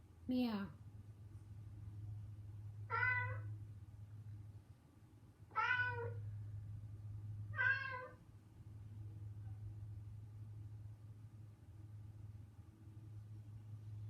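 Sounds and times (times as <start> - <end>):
steady low hum: 0.0 - 14.0
recorded cat meows: 2.9 - 3.5, 5.5 - 6.2, 7.5 - 8.2.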